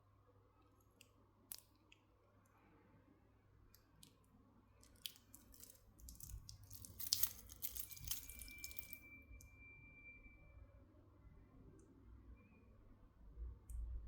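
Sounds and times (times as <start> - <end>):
clicking and rustling packaging: 4.8 - 9.0.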